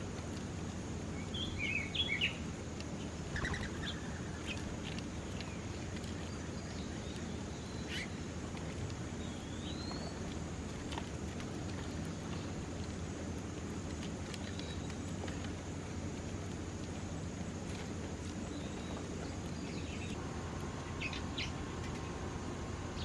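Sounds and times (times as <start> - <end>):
low outdoor rumble: 0.0 - 23.0
small birds chirping: 0.6 - 23.0
bird whistle: 3.3 - 4.1.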